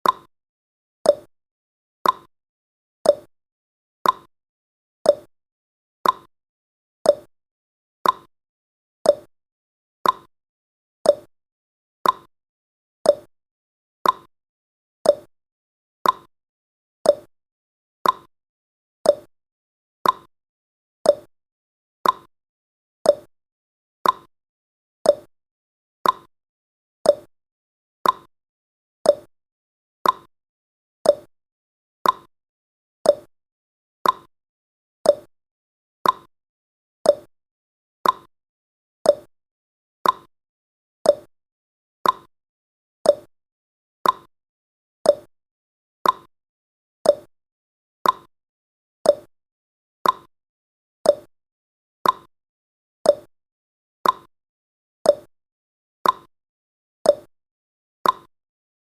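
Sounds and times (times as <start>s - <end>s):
clock-like timer ticking: 0.0s - 0.3s, 2.0s - 2.3s, 4.0s - 4.3s, 6.0s - 6.3s, 7.1s - 7.3s, 8.0s - 8.3s, 10.0s - 10.3s, 12.0s - 12.3s, 13.1s - 13.3s, 14.0s - 14.3s, 15.1s - 15.3s, 16.0s - 16.3s, 17.1s - 17.3s, 18.0s - 18.3s, 19.1s - 19.3s, 20.0s - 20.3s, 21.1s - 21.3s, 22.0s - 22.3s, 23.1s - 23.3s, 24.0s - 24.3s, 25.1s - 25.3s, 26.0s - 26.3s, 27.1s - 27.3s, 28.0s - 28.3s, 29.1s - 29.3s, 30.0s - 30.3s, 31.1s - 31.3s, 32.0s - 32.3s, 33.1s - 33.3s, 34.0s - 34.3s, 35.1s - 35.3s, 36.0s - 36.3s, 37.1s - 37.3s, 38.0s - 38.3s, 39.1s - 39.3s, 40.0s - 40.3s, 41.1s - 41.3s, 42.0s - 42.3s, 43.1s - 43.3s, 44.0s - 44.3s, 45.1s - 45.3s, 46.0s - 46.3s, 47.1s - 47.3s, 48.0s - 48.3s, 49.1s - 49.3s, 50.0s - 50.3s, 51.1s - 51.3s, 52.0s - 52.3s, 53.1s - 53.3s, 54.0s - 54.3s, 55.1s - 55.3s, 56.0s - 56.3s, 57.1s - 57.3s, 58.0s - 58.3s.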